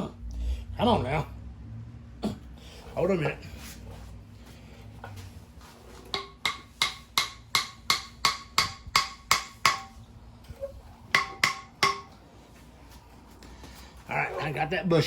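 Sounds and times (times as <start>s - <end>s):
hammer strikes ringing: 6.1s - 10.0s, 11.1s - 12.2s.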